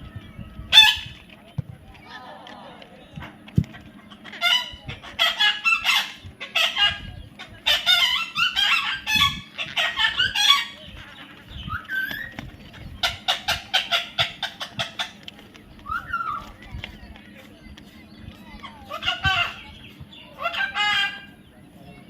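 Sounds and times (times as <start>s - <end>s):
parrot squawking: 0.7s - 1.2s, 4.2s - 12.3s, 13.0s - 15.2s, 18.6s - 21.3s.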